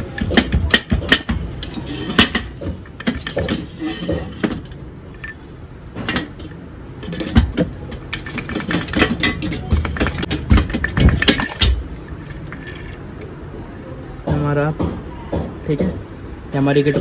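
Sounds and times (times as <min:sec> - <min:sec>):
metal tools knocking and clinking: 0:00.0 - 0:13.0.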